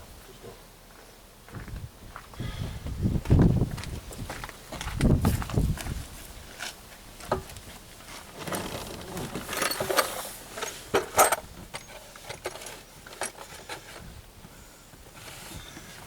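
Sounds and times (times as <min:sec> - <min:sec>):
hand tools clicking and clinking: 0:08.4 - 0:13.9.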